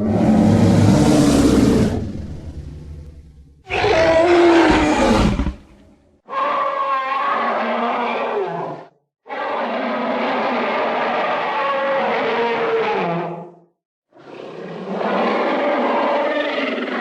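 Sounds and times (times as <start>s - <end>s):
monster roars: 0.0s - 8.7s.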